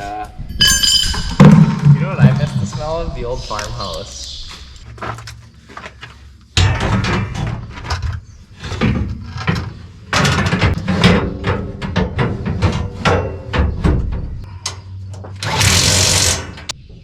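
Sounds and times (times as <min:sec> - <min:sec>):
metal clanks and knocks: 0:06.5 - 0:15.5.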